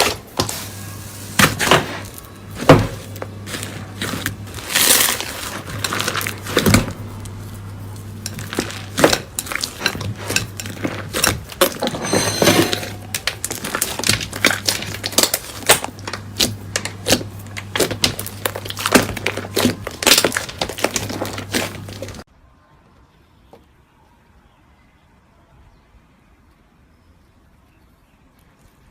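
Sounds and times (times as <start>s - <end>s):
steady low hum: 0.0s - 22.3s
slime crackling and popping: 1.3s - 11.8s, 13.0s - 22.2s.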